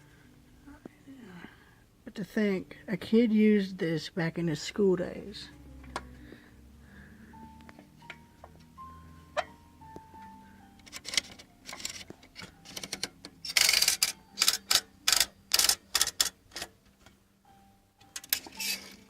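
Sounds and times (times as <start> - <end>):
toy typewriter keys clacking: 10.8 - 16.7.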